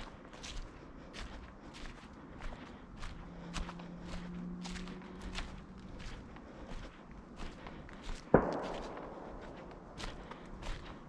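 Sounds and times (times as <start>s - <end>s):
footsteps crunching dry leaves: 0.0s - 11.0s.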